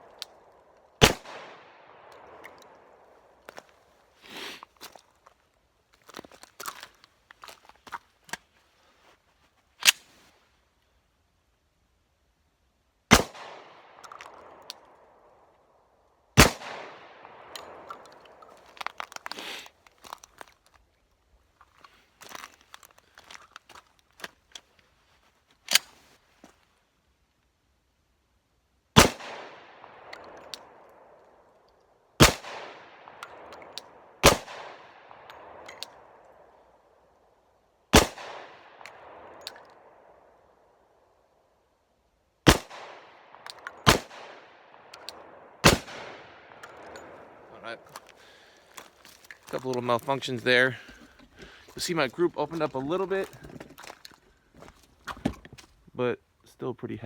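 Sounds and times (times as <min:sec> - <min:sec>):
pistol shots with echo: 0:01.0 - 0:02.4, 0:13.1 - 0:14.6, 0:16.4 - 0:17.9, 0:29.0 - 0:30.8, 0:32.2 - 0:36.2, 0:37.9 - 0:39.4, 0:42.5 - 0:47.5.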